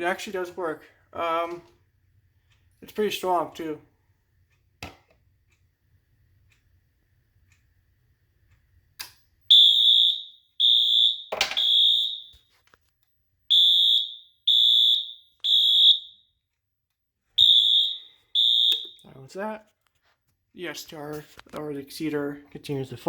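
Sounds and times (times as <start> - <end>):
click: 8.5 - 9.4
fire alarm beeping: 9.5 - 12.6, 13.5 - 16.5, 17.4 - 19.1.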